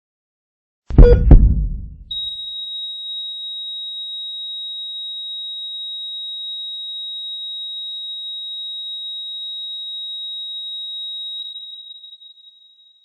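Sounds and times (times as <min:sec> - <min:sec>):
heart monitor flatline tone: 0:00.9 - 0:02.2.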